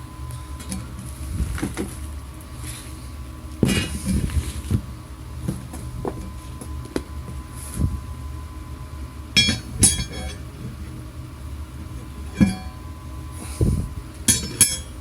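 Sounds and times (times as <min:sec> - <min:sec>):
metallic clinks of steel parts: 0:09.4 - 0:10.4, 0:14.3 - 0:14.9.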